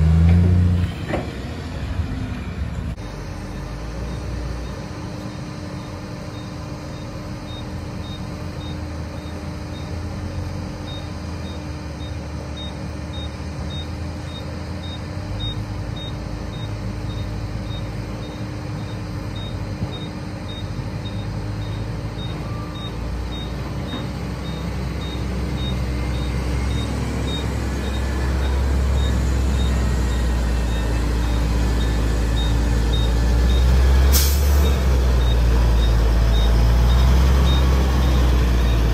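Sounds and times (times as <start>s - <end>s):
heavy diesel engine rumbling: 0.0s - 38.9s
faint high beeps: 10.9s - 33.7s.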